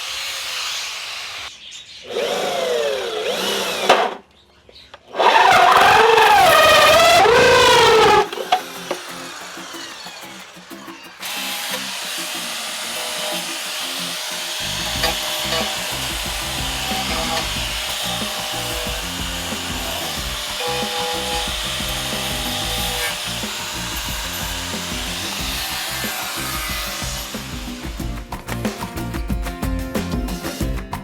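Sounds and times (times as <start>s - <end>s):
tool scraping wood: 5.1s - 28.0s
background music: 6.7s - 31.0s.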